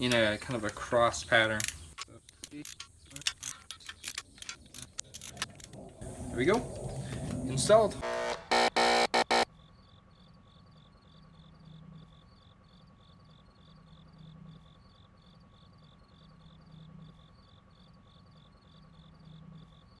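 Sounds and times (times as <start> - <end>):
cricket chirping: 9.2 - 20.0.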